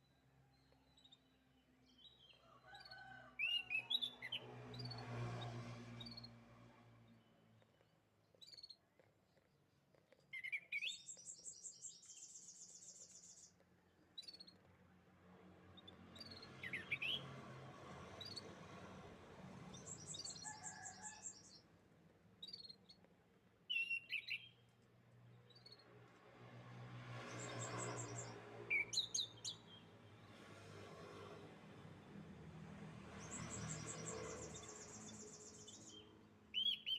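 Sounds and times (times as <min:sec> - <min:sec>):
canaries singing: 0:16.2 - 0:17.3, 0:19.7 - 0:21.6, 0:27.3 - 0:29.9, 0:33.2 - 0:36.9.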